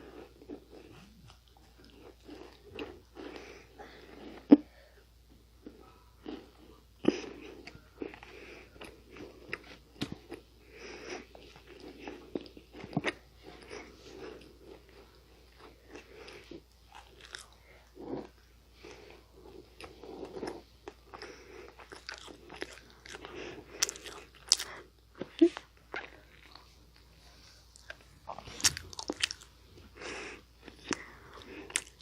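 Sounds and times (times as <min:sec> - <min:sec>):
chewing: 0:00.1 - 0:04.6, 0:05.6 - 0:32.0
crisp pastry crunching: 0:27.8 - 0:29.5.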